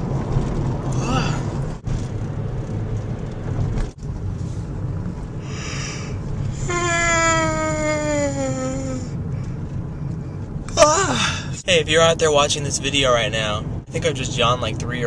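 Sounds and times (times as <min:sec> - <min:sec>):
car road rumble: 0:00.0 - 0:15.0
man yawning aloud: 0:01.0 - 0:01.5, 0:10.8 - 0:11.6.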